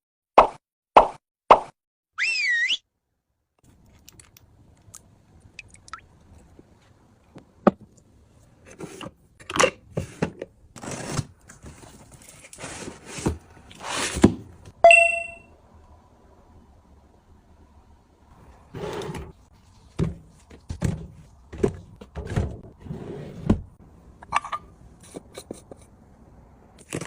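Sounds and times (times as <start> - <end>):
packaging rustling and scraping: 10.1 - 14.3.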